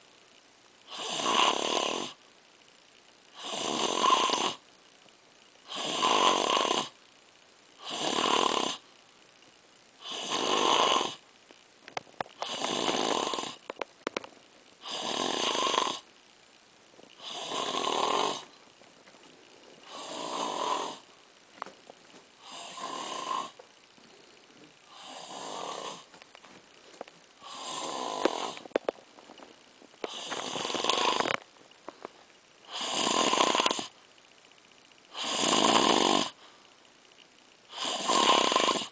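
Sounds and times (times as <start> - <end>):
quiet breaths: 0.0 - 38.9
heavy snoring: 0.9 - 2.2, 3.3 - 4.6, 5.6 - 7.0, 7.8 - 8.8, 10.0 - 11.2, 12.4 - 13.7, 14.8 - 16.1, 17.2 - 18.5, 19.8 - 21.1, 22.4 - 23.6, 24.8 - 26.2, 27.4 - 28.8, 30.0 - 31.4, 32.6 - 34.0, 35.1 - 36.4, 37.7 - 38.9.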